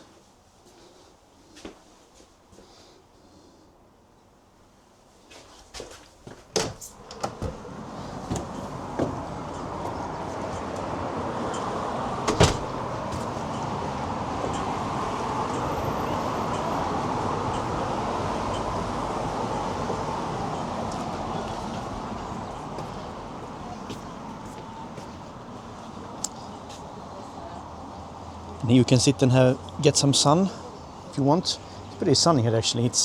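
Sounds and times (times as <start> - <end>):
rushing outdoor background noise: 4.7 - 33.0
door opening: 6.3 - 10.9, 11.5 - 13.5.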